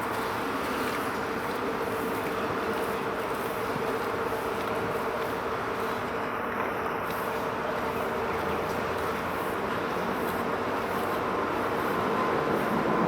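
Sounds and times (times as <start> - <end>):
vehicle traffic drone: 9.0 - 13.0.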